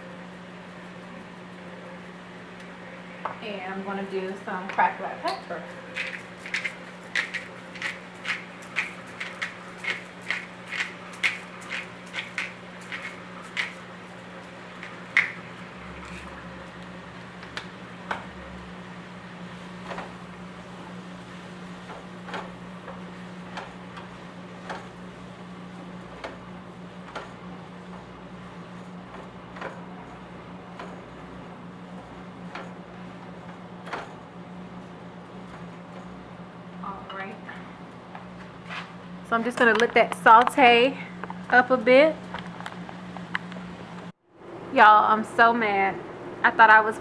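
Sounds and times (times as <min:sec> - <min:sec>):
steady low hum: 0:00.0 - 0:47.0
pepper mill clicking: 0:06.0 - 0:13.8.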